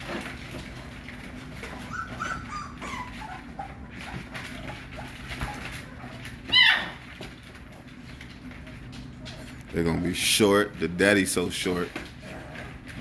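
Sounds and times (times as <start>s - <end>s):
puppies whimpering: 1.5s - 7.2s
high-pitched puppy squeaks: 1.8s - 7.0s.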